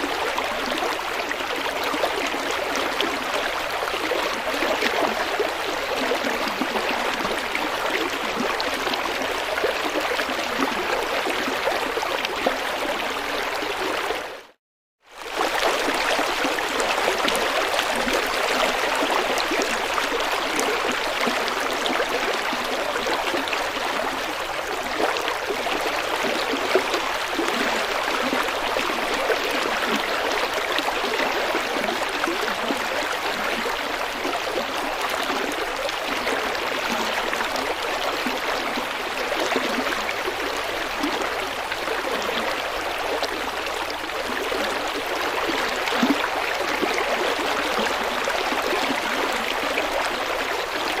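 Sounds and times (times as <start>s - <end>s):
river water babbling over stones: 15.2s - 51.0s.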